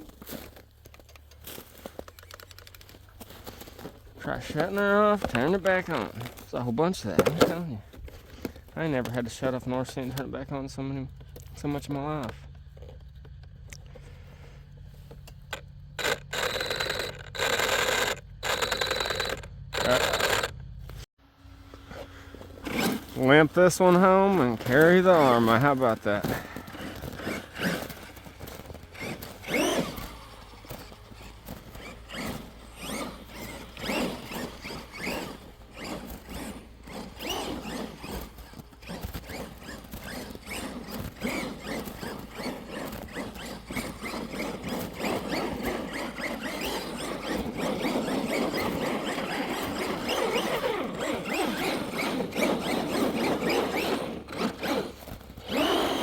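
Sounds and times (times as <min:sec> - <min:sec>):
electric motor whining: 0:01.5 - 0:08.8, 0:11.1 - 0:56.0.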